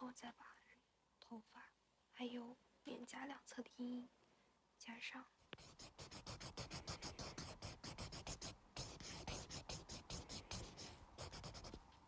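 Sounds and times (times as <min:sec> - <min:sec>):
marker shading strokes: 0:05.5 - 0:11.9.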